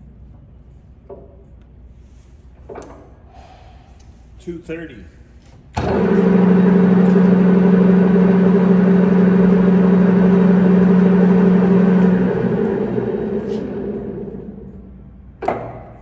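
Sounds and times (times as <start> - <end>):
lathe running with gear hum: 5.8 - 14.9
lathe spindle winding down: 5.8 - 15.0.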